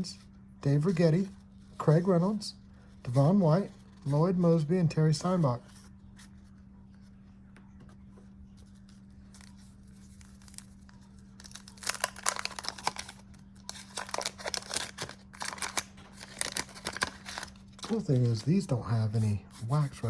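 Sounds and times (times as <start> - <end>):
faint low hum: 0.0 - 20.0
wax paper wrapper tearing: 9.4 - 18.4.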